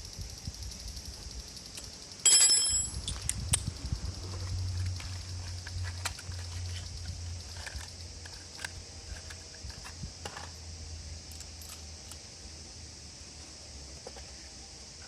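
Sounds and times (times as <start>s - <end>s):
hand tools clicking and clinking: 1.8s - 3.7s.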